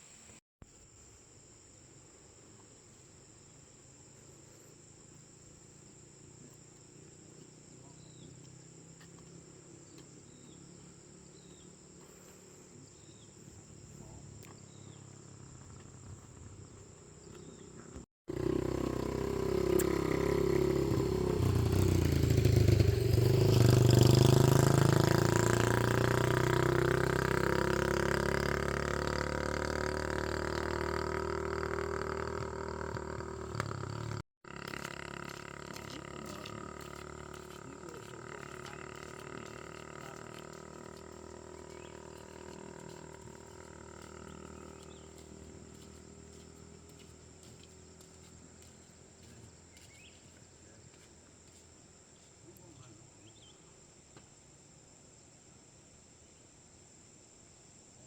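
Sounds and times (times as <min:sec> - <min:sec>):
motorbike engine running: 0:14.2 - 0:50.4.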